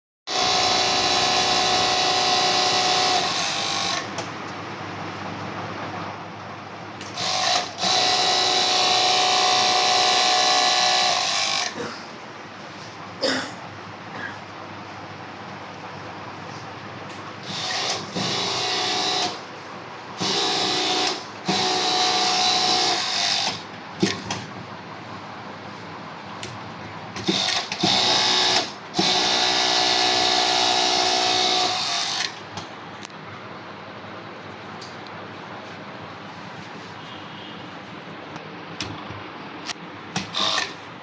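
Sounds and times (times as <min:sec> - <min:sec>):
sewing machine stitching: 0:00.3 - 0:04.1, 0:07.1 - 0:11.8, 0:17.4 - 0:19.4, 0:20.2 - 0:24.3, 0:27.2 - 0:32.4, 0:40.2 - 0:40.8.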